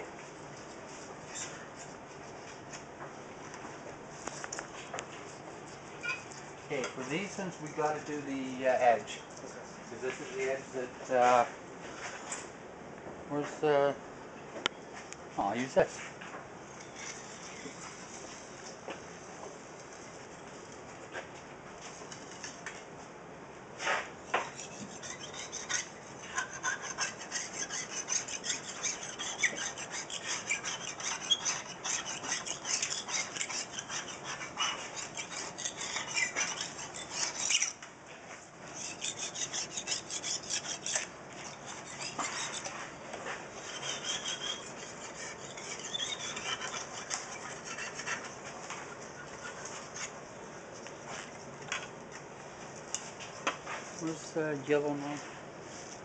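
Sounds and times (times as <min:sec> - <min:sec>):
blade scraper rasping on glass: 0:05.3 - 0:08.0, 0:24.3 - 0:37.8, 0:38.7 - 0:42.8, 0:43.6 - 0:48.4.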